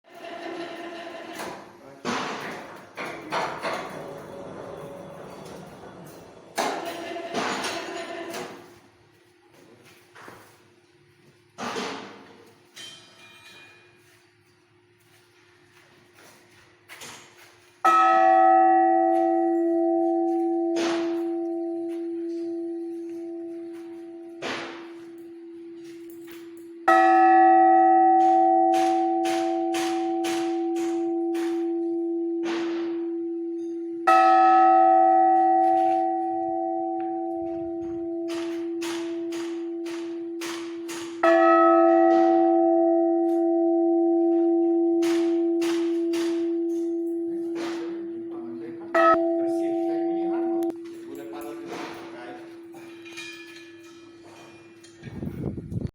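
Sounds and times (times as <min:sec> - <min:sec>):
church bell ringing: 0:03.2 - 0:08.7, 0:17.8 - 0:54.8.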